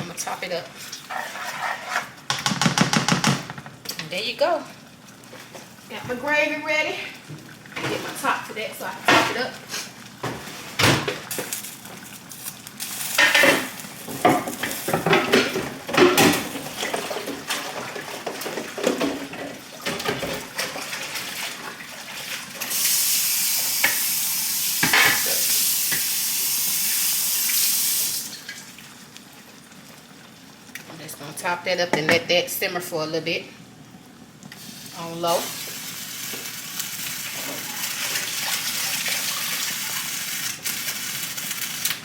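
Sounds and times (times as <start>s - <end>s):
pots and utensils clinking: 13.1s - 21.8s, 24.8s - 26.1s
water tap running: 15.7s - 30.7s, 34.6s - 42.0s.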